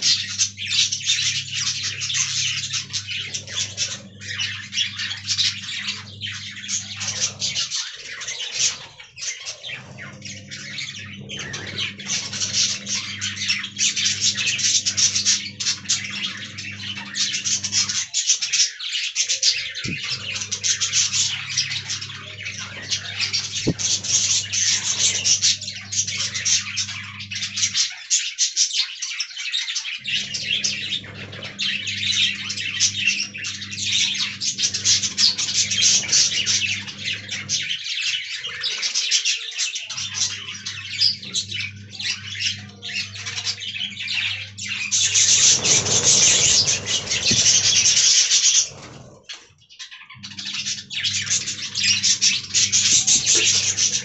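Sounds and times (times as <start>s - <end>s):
budgerigars chattering: 0.0s - 54.0s
steady low hum: 19.6s - 27.8s, 30.0s - 37.8s, 50.2s - 54.0s.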